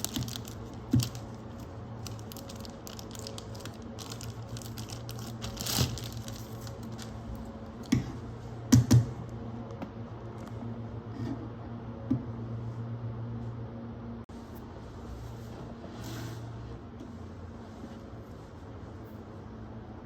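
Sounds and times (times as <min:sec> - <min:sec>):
packaging rustle: 0:00.0 - 0:07.9
steady low hum: 0:00.0 - 0:20.0.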